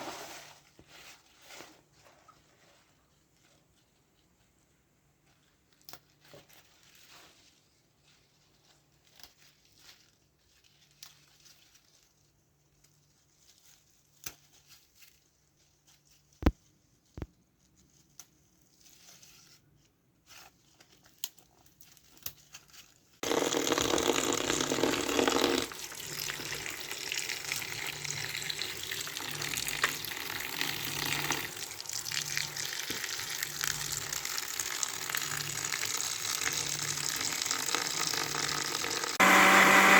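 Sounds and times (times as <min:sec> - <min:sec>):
running water: 0:23.2 - 0:39.9.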